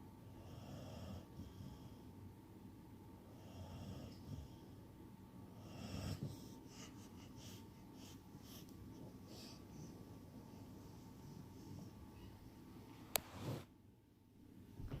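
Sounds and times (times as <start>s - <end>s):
pet snoring softly: 0.4s - 2.0s, 3.3s - 4.8s, 5.6s - 6.6s.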